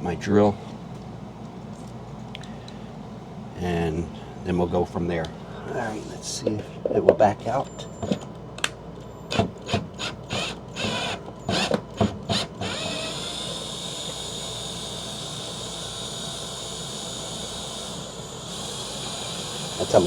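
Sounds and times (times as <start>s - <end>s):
power drill backing out screw: 9.2s - 20.0s.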